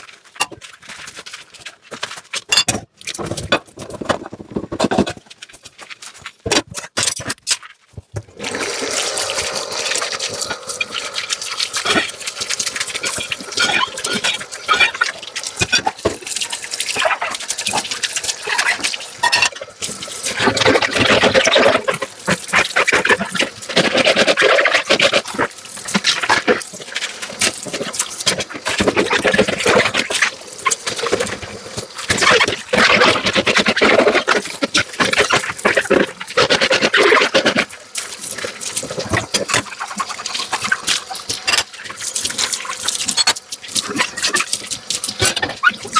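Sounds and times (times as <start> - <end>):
dishes clinking: 2.5 - 2.8, 41.4 - 41.7
scrubbing dishes: 8.1 - 45.9
running tap water: 8.2 - 45.9.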